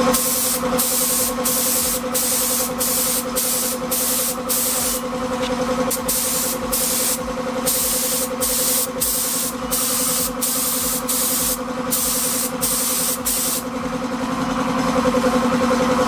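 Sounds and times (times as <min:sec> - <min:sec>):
air compressor humming: 0:00.0 - 0:16.0
spray gun hissing: 0:00.1 - 0:05.0, 0:05.9 - 0:13.6.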